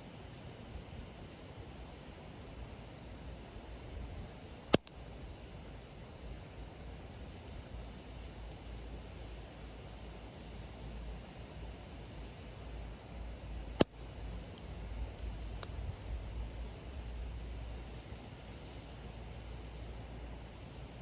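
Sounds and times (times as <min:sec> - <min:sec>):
campfire burning: 0:00.0 - 0:21.0
burning wood popping: 0:02.5 - 0:05.6, 0:11.4 - 0:19.9.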